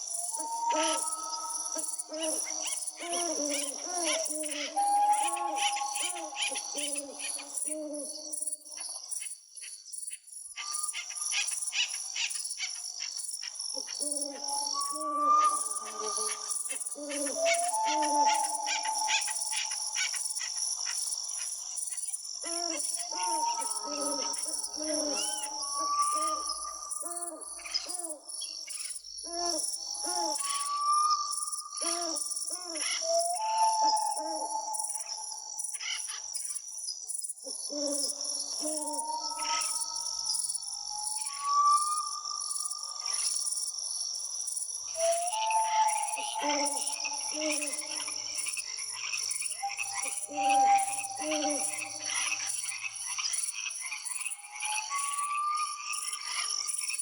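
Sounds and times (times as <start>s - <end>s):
low cooing bird call: 0.0s - 8.6s, 13.7s - 20.6s, 22.4s - 36.1s, 37.4s - 43.4s, 44.9s - 52.9s, 54.1s - 56.6s
short hooting bird calls: 45.0s - 48.5s, 49.7s - 52.4s.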